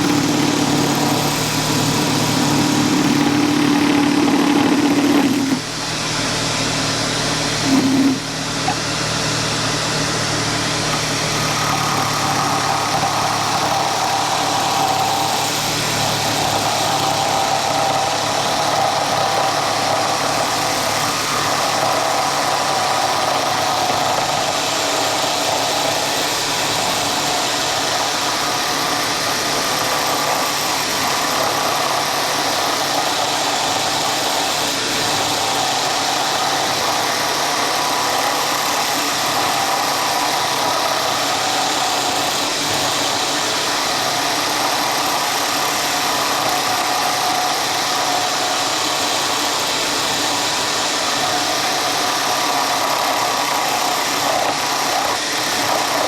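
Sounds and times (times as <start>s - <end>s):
power tool motor running: 0.0s - 56.0s.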